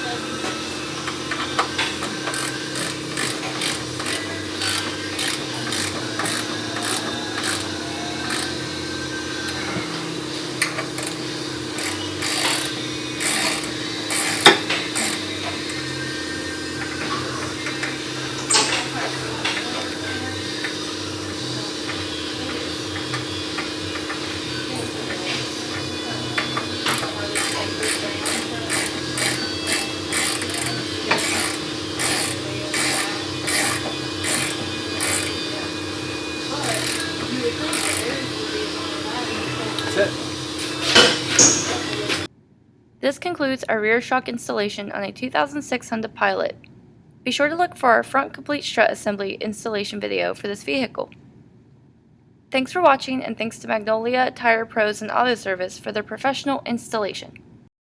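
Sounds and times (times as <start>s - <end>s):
steady hum: 0.0s - 42.3s
ratchet wrench strokes: 1.0s - 8.6s, 10.3s - 15.9s, 26.8s - 35.6s, 36.4s - 38.2s
hand tools clinking on metal: 26.8s - 35.4s, 36.5s - 38.1s.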